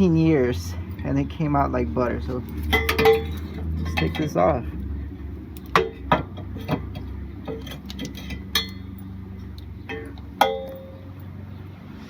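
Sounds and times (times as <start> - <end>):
steady low hum: 0.0 - 12.0
metal clanks and clinks: 2.0 - 4.6, 5.5 - 11.4.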